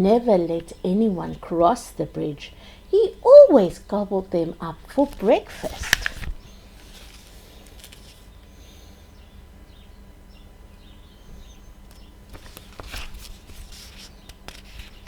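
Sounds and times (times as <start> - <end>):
low background hum: 0.0 - 15.0
faint bird chirps: 8.2 - 12.2.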